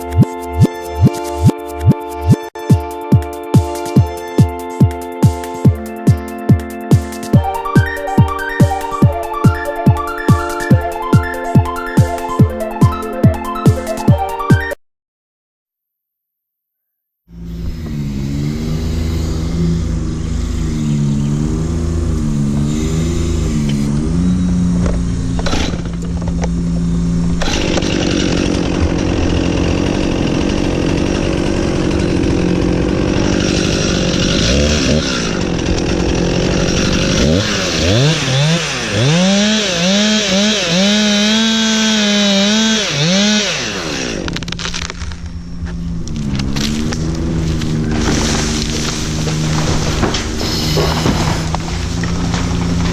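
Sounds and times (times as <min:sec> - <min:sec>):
chainsaw running and revving: 0:17.3 - 0:52.9.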